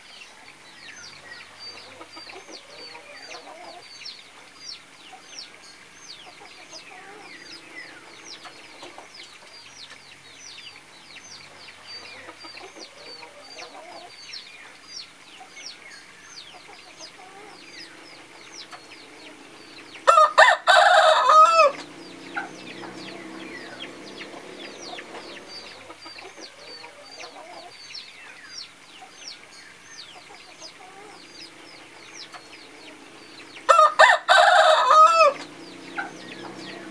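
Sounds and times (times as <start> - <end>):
high falling chirps: 16.7 - 27.4
rooster crowing: 17.1 - 27.7, 30.4 - 36.9.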